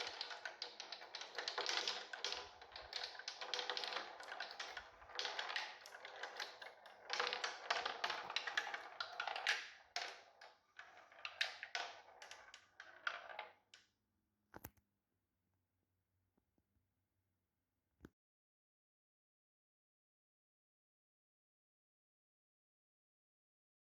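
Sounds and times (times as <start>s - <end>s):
marbles clattering down track: 0.0s - 13.8s.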